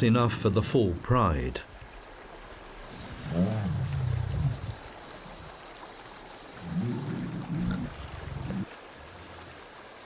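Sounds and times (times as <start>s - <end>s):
insects chirping: 0.1s - 10.0s
lion growling: 2.9s - 5.6s, 6.5s - 8.7s.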